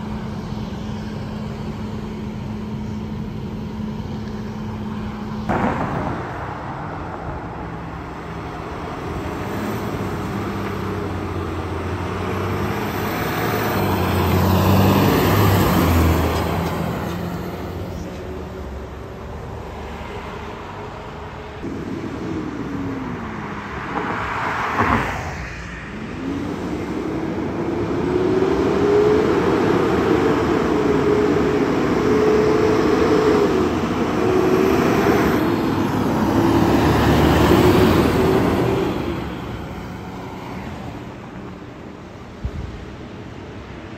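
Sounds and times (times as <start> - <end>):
heavy engine and road noise: 0.0 - 43.9
fire truck siren: 26.2 - 40.1.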